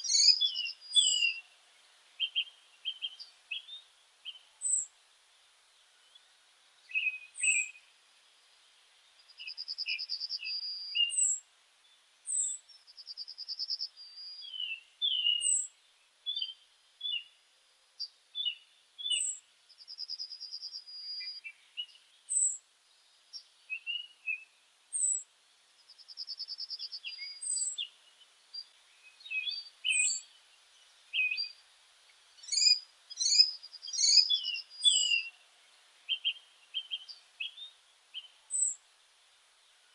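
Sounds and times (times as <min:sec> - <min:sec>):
buzzy bird trill: 0:00.0 - 0:01.4, 0:32.4 - 0:35.4.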